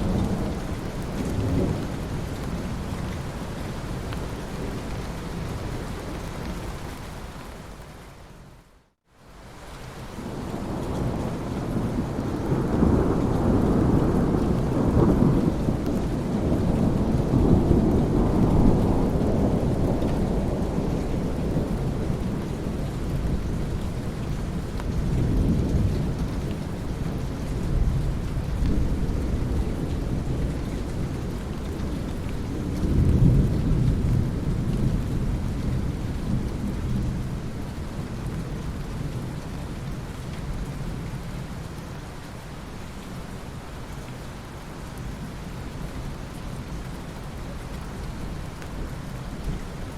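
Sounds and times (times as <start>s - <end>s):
steady rain: 0.0s - 49.9s
rolling thunder: 10.2s - 24.2s.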